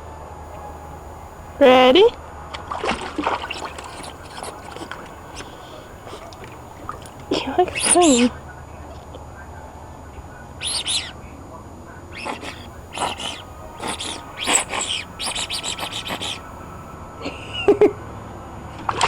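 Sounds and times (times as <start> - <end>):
songbird chirping: 3.4 - 8.3, 12.2 - 16.8.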